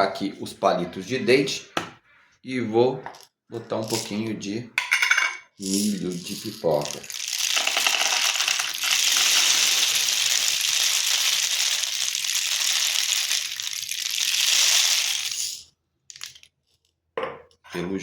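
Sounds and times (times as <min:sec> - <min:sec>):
popcorn kernels rattling in rain stick: 0:05.6 - 0:16.5.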